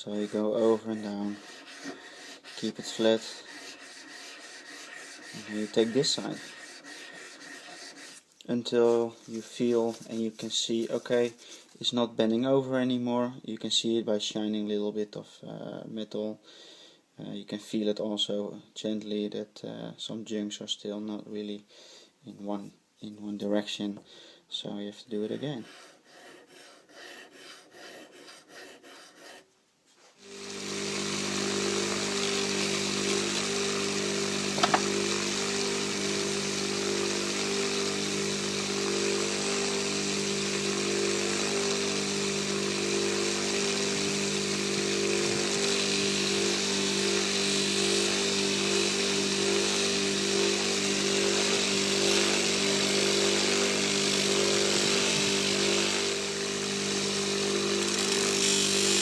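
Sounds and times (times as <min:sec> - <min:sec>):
faint rubbing strokes: 0:00.0 - 0:12.0, 0:25.1 - 0:30.2
buffing wheel motor humming: 0:30.2 - 0:58.0.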